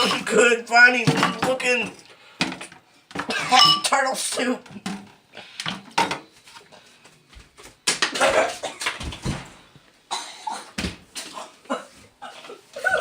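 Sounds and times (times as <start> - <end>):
pot and utensils clattering: 0.0 - 6.3.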